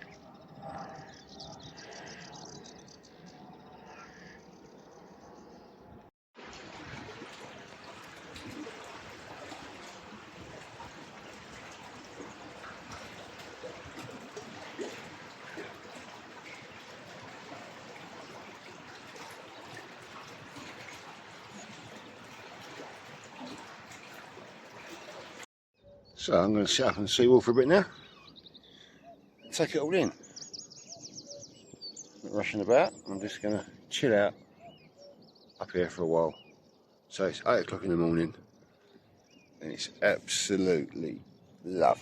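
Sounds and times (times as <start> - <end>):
water trickling: 6.4 - 25.5.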